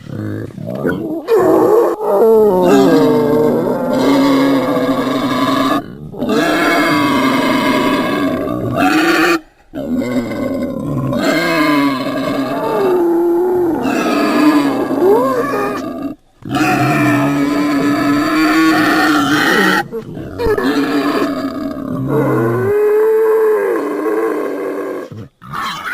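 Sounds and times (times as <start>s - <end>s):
pig squealing: 0.8s - 24.0s, 25.4s - 25.9s.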